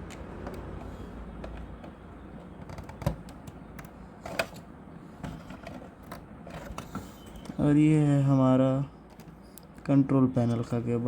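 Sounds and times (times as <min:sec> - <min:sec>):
plastic printer parts clicking: 0:00.1 - 0:07.1, 0:09.1 - 0:09.7.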